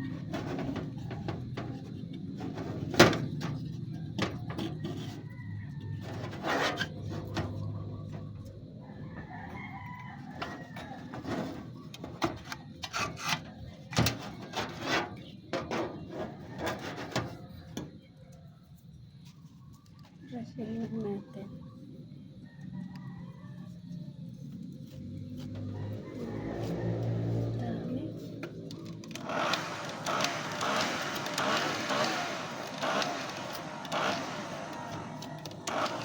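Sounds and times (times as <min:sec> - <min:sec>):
rooster crowing: 0:08.8 - 0:11.6, 0:22.4 - 0:24.0, 0:25.4 - 0:28.0, 0:29.4 - 0:36.0.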